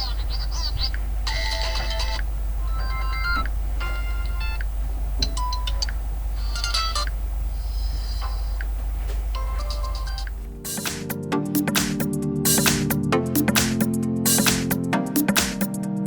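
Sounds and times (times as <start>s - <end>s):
phone ringtone snippets: 0.0s - 4.6s
steady low hum: 0.0s - 15.2s.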